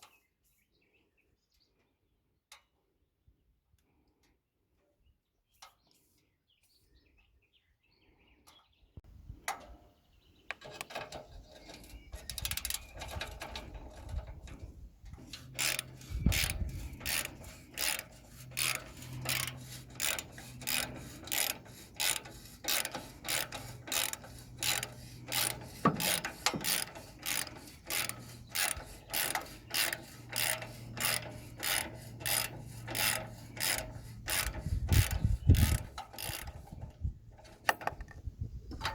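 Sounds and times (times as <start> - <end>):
socket ratchet clicking: 15.4 - 36.6.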